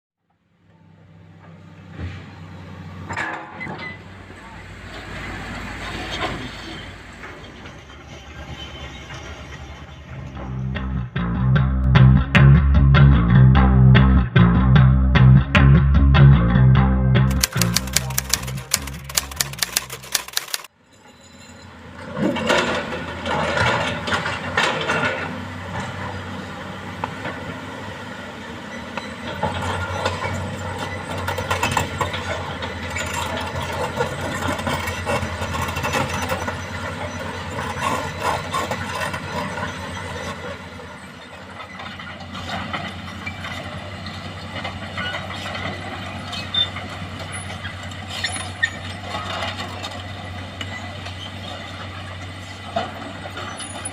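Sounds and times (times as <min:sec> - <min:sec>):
excavator diesel engine droning: 0:00.6 - 0:12.4, 0:21.7 - 0:53.9.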